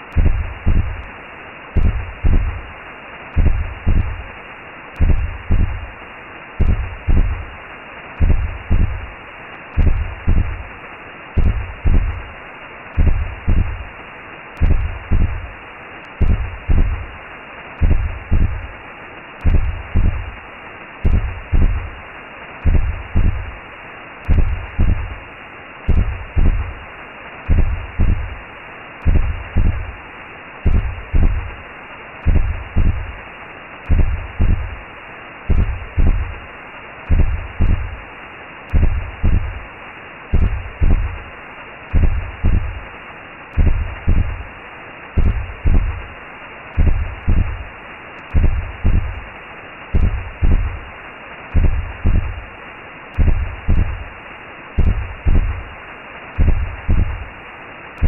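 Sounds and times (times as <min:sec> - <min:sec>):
slow heartbeat thumps: 0:00.0 - 0:01.1, 0:01.8 - 0:02.7, 0:03.3 - 0:04.3, 0:05.0 - 0:06.0, 0:06.6 - 0:07.6, 0:08.2 - 0:09.1, 0:09.8 - 0:10.7, 0:11.4 - 0:12.3, 0:13.0 - 0:13.9, 0:14.6 - 0:17.2, 0:17.8 - 0:18.8, 0:19.4 - 0:20.4, 0:21.0 - 0:22.0, 0:22.6 - 0:23.6, 0:24.2 - 0:25.2, 0:25.8 - 0:26.8, 0:27.5 - 0:28.4, 0:29.0 - 0:30.0, 0:30.6 - 0:31.6, 0:32.2 - 0:33.2, 0:33.9 - 0:34.8, 0:35.5 - 0:36.5, 0:37.1 - 0:38.0, 0:38.7 - 0:39.7, 0:40.3 - 0:41.3, 0:41.9 - 0:42.9, 0:43.5 - 0:44.5, 0:45.2 - 0:46.2, 0:46.8 - 0:47.7, 0:48.3 - 0:49.3, 0:49.9 - 0:50.9, 0:51.5 - 0:52.5, 0:53.1 - 0:54.2, 0:54.8 - 0:55.7, 0:56.4 - 0:57.3
steady whooshing hiss: 0:00.0 - 0:58.0.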